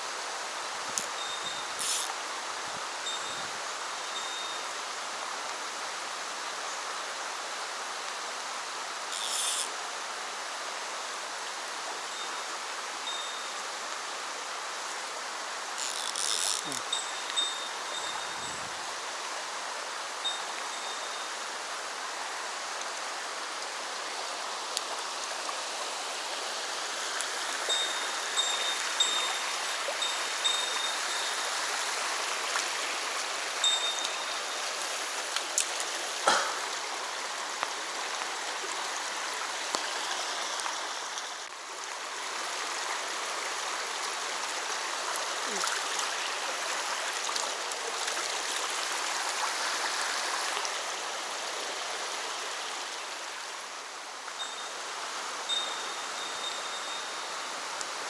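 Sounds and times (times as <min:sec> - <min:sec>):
stream running over rocks: 0:00.0 - 0:58.0
faint thin high calls: 0:01.0 - 0:02.2, 0:09.1 - 0:09.7, 0:15.8 - 0:18.4.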